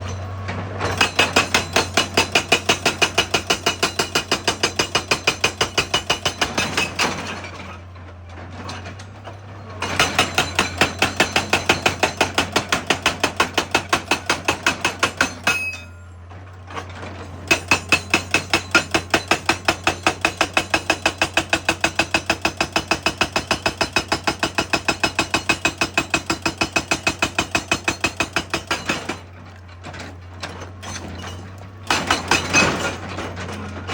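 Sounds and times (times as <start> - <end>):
hydraulic breaker hammering rock: 0.0 - 7.7, 8.6 - 16.1, 16.7 - 33.9.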